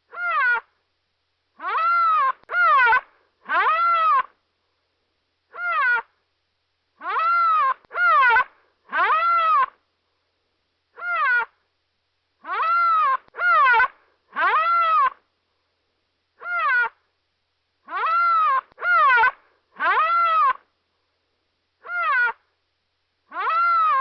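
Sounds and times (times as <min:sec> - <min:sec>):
animal calling: 0:00.1 - 0:00.7, 0:01.6 - 0:04.4, 0:05.5 - 0:06.2, 0:07.0 - 0:09.8, 0:10.9 - 0:11.6, 0:12.4 - 0:15.2, 0:16.4 - 0:17.0, 0:17.8 - 0:20.7, 0:21.8 - 0:22.5, 0:23.3 - 0:24.0.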